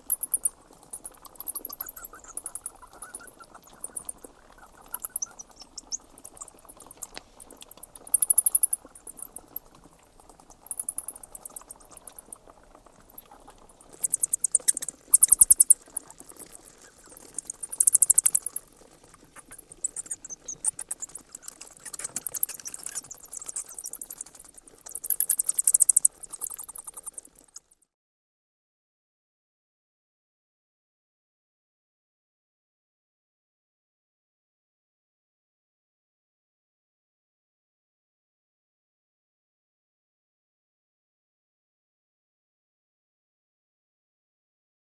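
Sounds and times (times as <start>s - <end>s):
bats squeaking: 0.0s - 27.8s.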